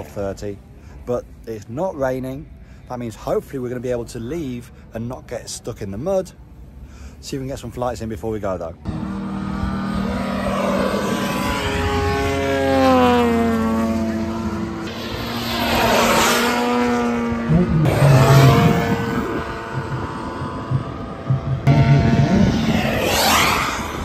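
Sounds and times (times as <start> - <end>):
model aircraft engine flying past: 8.9 - 24.0.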